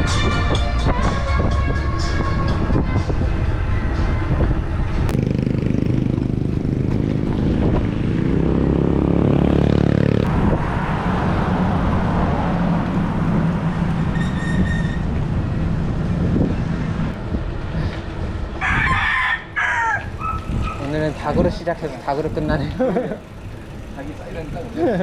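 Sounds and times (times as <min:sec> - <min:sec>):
steady low rumble: 0:00.0 - 0:08.6
motor vehicle passing: 0:01.8 - 0:25.0.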